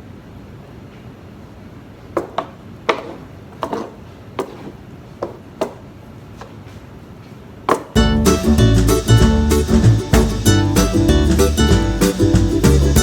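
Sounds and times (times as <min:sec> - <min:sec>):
sharp knocks on hard surface: 0:02.2 - 0:05.8.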